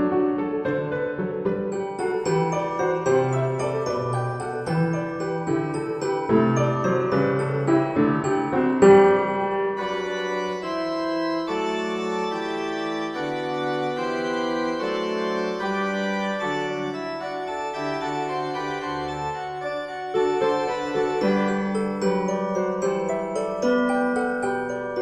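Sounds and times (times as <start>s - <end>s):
organ-like keyboard chords: 7.3s - 21.7s.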